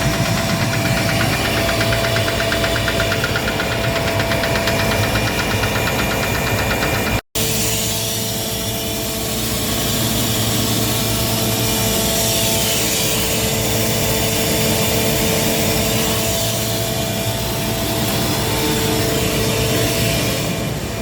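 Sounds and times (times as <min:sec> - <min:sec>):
air compressor hum and whine: 0:00.0 - 0:21.0.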